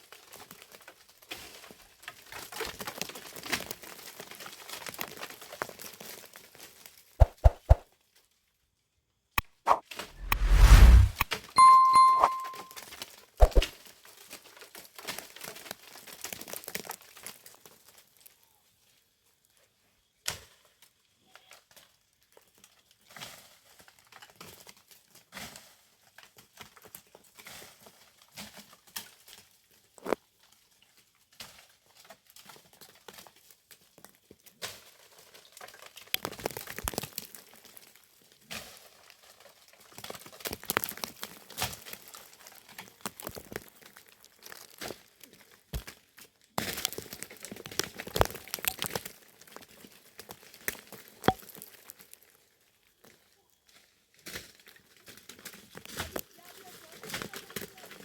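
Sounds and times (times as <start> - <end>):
dry leaves and twigs rustling: 14.7 - 18.3, 35.4 - 53.8.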